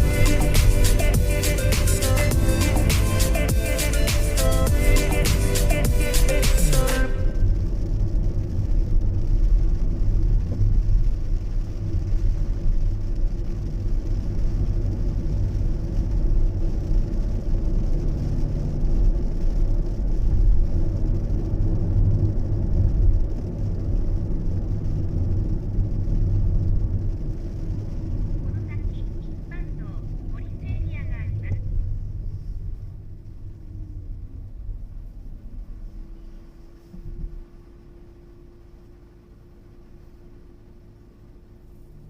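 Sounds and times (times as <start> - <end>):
strong wind buffeting microphone: 7.4 - 37.8.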